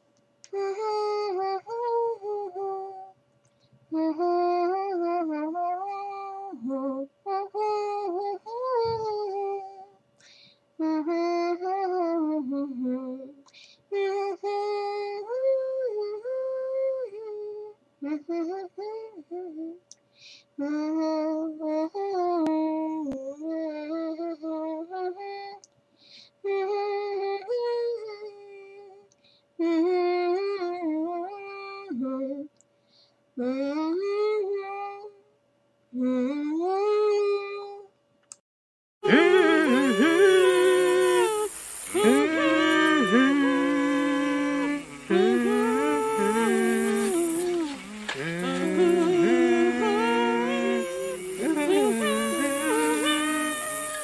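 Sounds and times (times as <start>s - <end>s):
woman humming: 39.0s - 54.0s.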